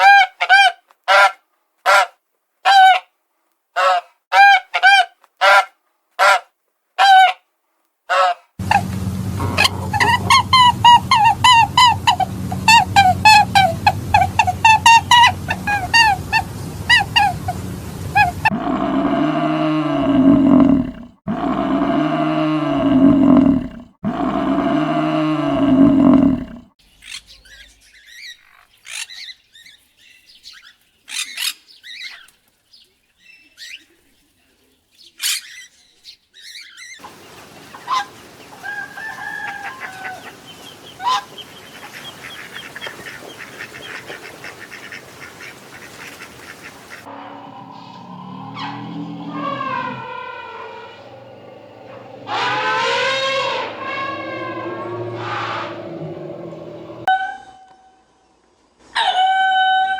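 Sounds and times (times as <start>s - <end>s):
rooster crowing: 38.6s - 40.4s, 47.0s - 57.2s, 59.0s - 59.9s.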